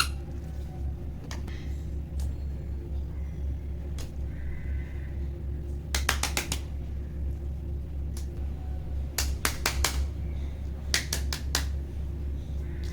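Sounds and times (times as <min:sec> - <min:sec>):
low hum: 0:00.0 - 0:12.9.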